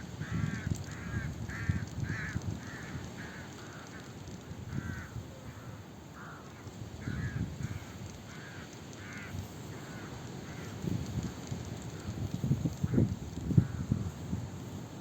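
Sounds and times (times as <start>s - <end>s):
birds harsh calls: 0.2s - 10.9s.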